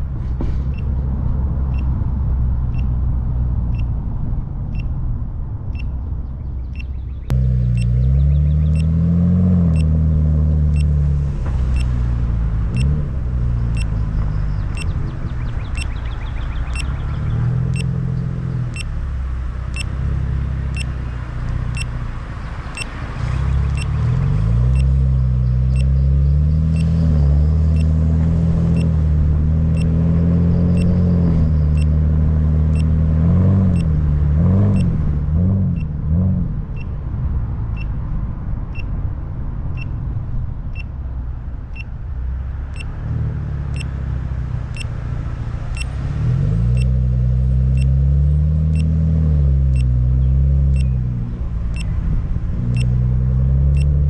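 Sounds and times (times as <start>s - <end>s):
car engine running: 6.6s - 37.0s.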